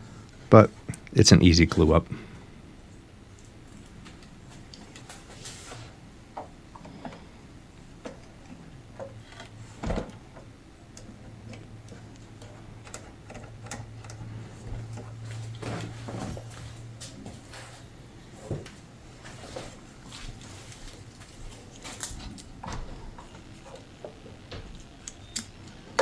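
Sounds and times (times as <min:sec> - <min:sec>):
low hum: 0:21.1 - 0:26.0.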